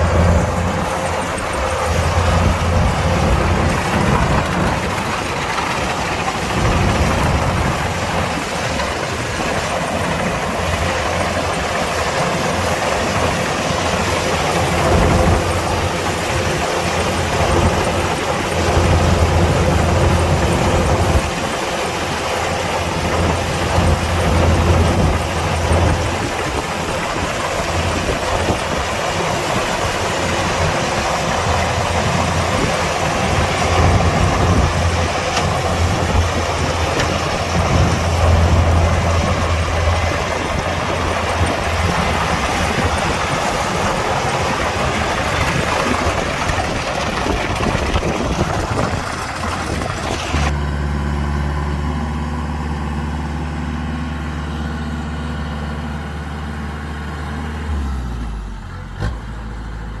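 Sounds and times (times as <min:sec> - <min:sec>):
combine harvester running: 0:00.0 - 1:00.0.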